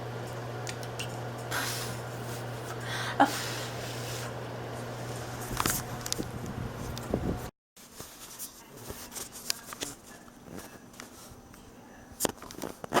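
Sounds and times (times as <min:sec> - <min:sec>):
steady low hum: 0:00.0 - 0:07.5.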